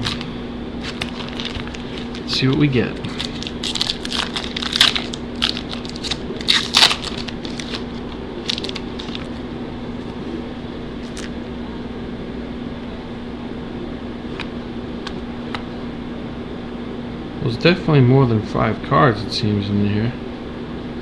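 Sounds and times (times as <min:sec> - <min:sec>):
foil wrapper tearing and crinkling: 0:00.0 - 0:09.4, 0:11.0 - 0:11.4
steady low hum: 0:00.0 - 0:21.0.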